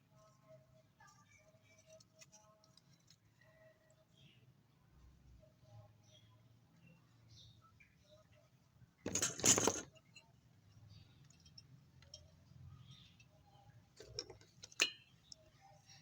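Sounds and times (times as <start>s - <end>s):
short metallic clatter: 9.1s - 9.9s.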